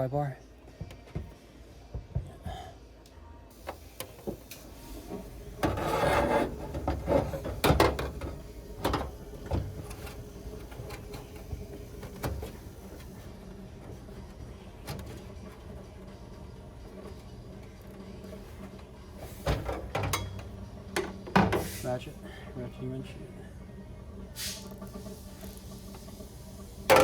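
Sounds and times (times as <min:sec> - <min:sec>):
metal clanks and knocks: 0:05.0 - 0:12.6, 0:19.5 - 0:21.7
rasping scrape on metal: 0:05.6 - 0:07.6.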